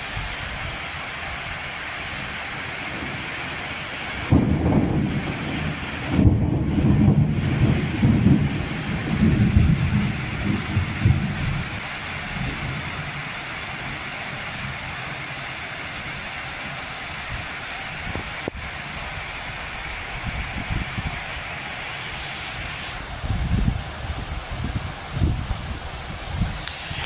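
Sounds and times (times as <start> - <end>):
steady rain hissing: 0.0 - 27.0
thunder rumble: 4.2 - 13.2.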